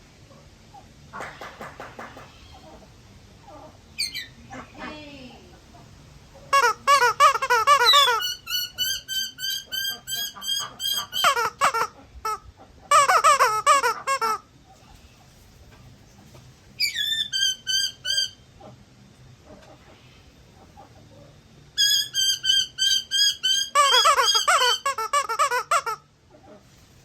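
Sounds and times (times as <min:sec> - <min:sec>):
squeaky toy squeaking: 0:06.5 - 0:14.4, 0:16.8 - 0:18.4, 0:21.8 - 0:26.0.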